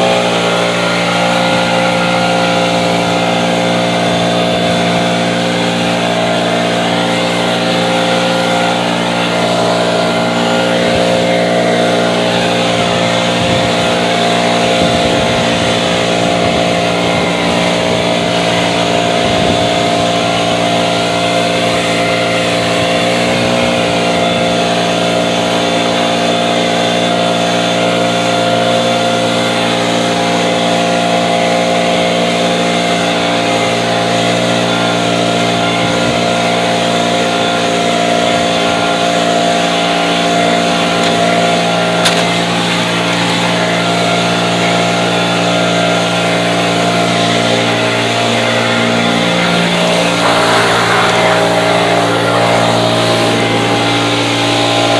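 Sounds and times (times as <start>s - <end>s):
leaf blower running: 0.0s - 54.9s.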